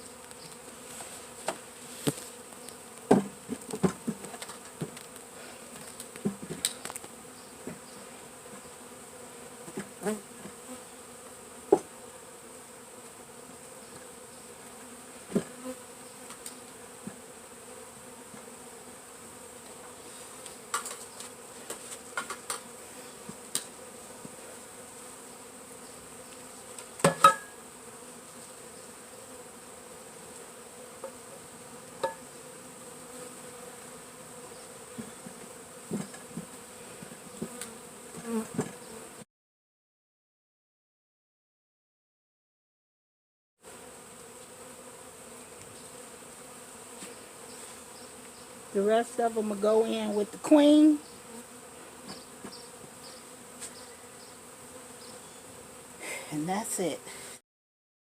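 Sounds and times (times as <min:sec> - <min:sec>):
bees buzzing: 0:00.0 - 0:39.2, 0:43.6 - 0:57.4.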